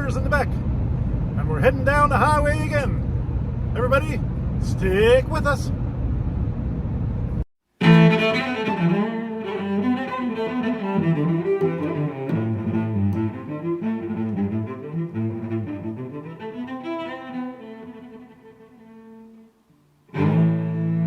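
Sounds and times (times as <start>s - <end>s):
bowed string music: 7.8s - 21.0s.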